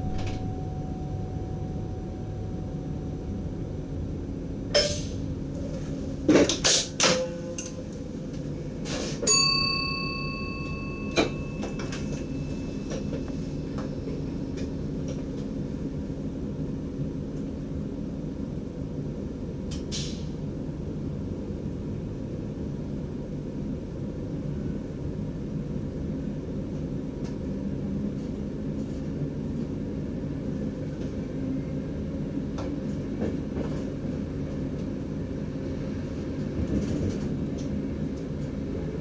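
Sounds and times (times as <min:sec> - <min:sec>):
train cab hum: 0:00.0 - 0:39.0
short metallic ring: 0:04.7 - 0:05.2.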